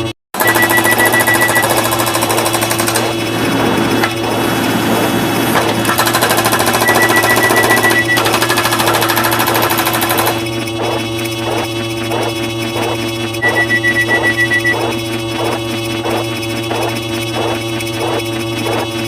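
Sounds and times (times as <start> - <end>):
rapid high beeping: 0.4 - 3.0, 6.0 - 18.9
fast mechanical clatter: 0.4 - 19.0
cartoon sound effects: 12.8 - 16.2
steady held tones: 12.8 - 16.9.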